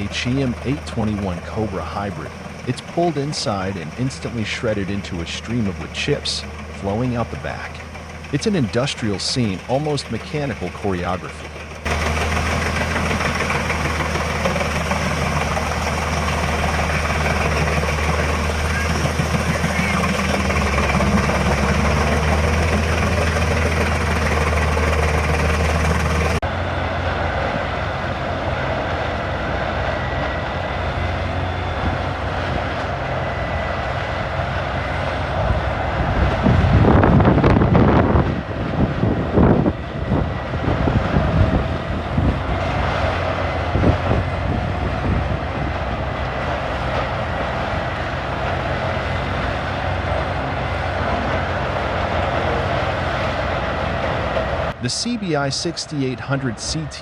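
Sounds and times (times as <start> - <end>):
machinery engine drone: 0.0 - 57.0
wood being shredded: 11.4 - 26.4.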